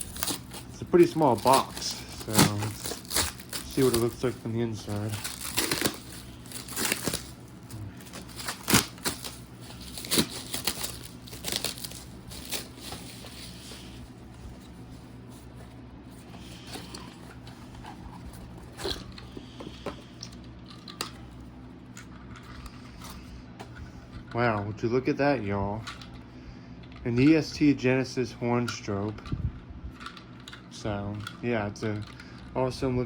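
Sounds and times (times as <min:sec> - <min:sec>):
cardboard packaging crinkling: 0:00.0 - 0:21.4.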